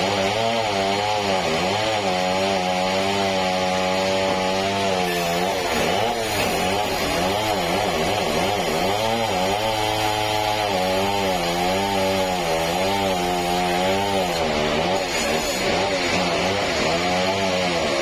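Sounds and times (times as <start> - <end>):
sawmill motor hum: 4.0 - 18.0
saw cutting hiss: 5.0 - 16.3.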